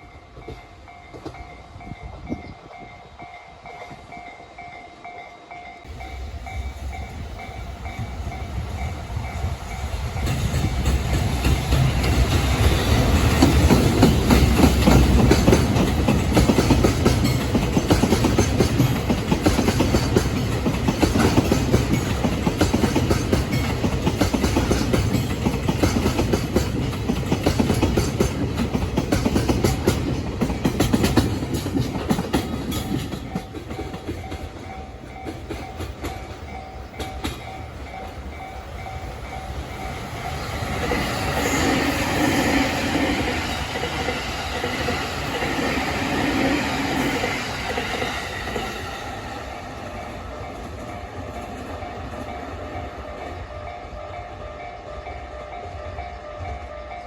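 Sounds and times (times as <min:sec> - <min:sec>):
deep train rumble: 0:05.6 - 0:57.0
train wheels clacking over rail joints: 0:10.0 - 0:53.2.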